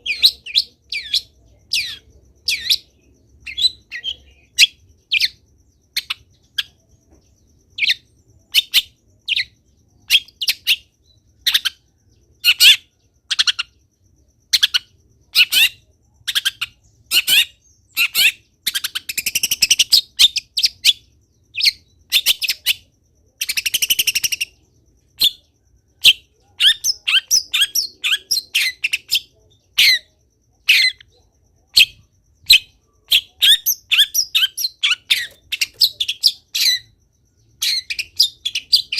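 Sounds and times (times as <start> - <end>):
bird harsh chattering: 31.8 - 37.0.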